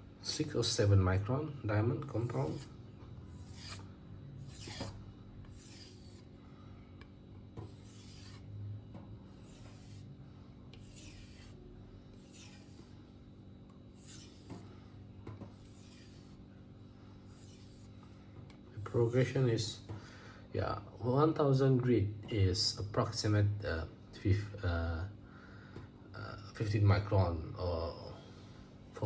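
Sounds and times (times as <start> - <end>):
knife rubbing on a strop: 2.0 - 6.4, 7.6 - 8.5, 9.3 - 10.1, 10.7 - 13.1, 13.9 - 14.9, 15.5 - 16.4, 17.0 - 18.0, 18.8 - 19.5.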